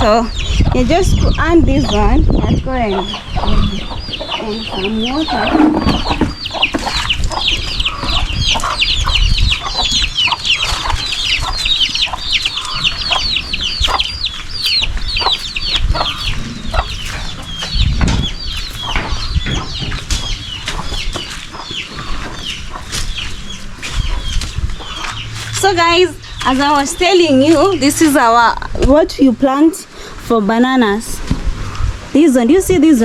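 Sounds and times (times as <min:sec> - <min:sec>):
chickens peeping: 0:00.0 - 0:33.0
low knocks and rustling: 0:15.2 - 0:25.7.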